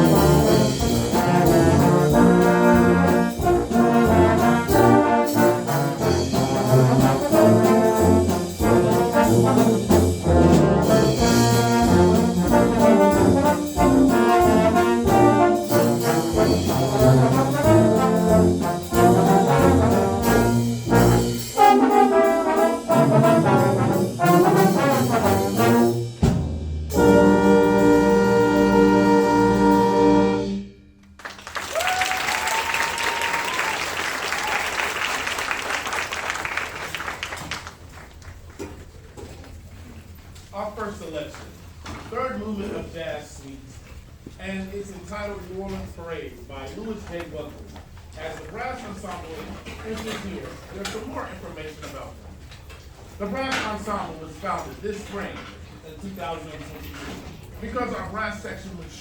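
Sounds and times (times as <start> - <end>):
brass band playing jazz march: 0.0 - 31.1.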